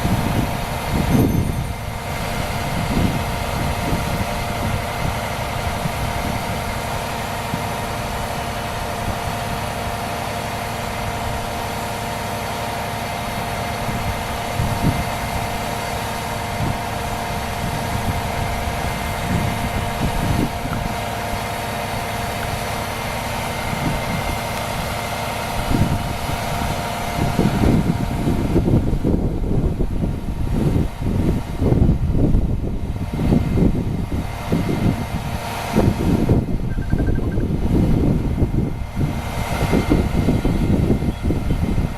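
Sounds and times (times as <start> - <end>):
constant whine: 0.0 - 41.9
engine idling: 0.0 - 41.9.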